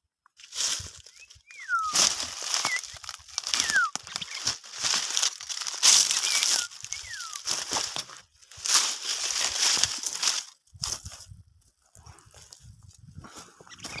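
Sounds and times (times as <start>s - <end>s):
rustling crackling bursts: 0.4s - 14.0s
thin whistled calls sliding down: 0.8s - 5.1s, 5.8s - 7.5s.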